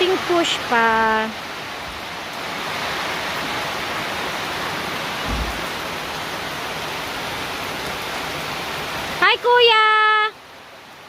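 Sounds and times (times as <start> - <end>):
steady rain falling: 0.0 - 11.0
low thump: 5.2 - 5.7.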